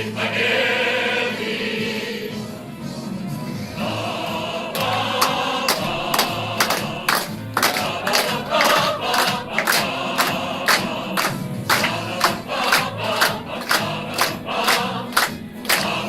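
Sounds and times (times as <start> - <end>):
choir and instrumental music: 0.0 - 16.0
audience clapping in rhythm: 3.8 - 16.0.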